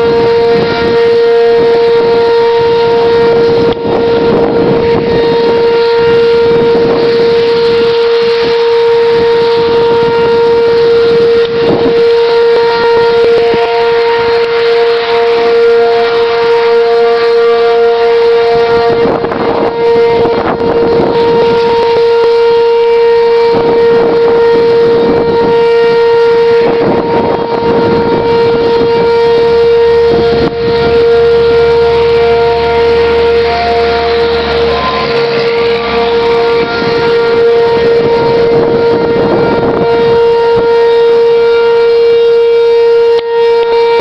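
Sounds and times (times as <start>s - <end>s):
warning siren steady tone: 0.0s - 44.0s
wind buffeting microphone: 0.0s - 44.0s.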